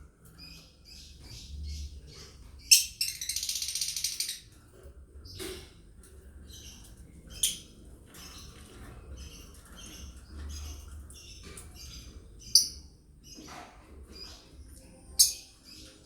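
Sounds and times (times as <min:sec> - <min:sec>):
lovebirds chirping: 0:06.3 - 0:16.0.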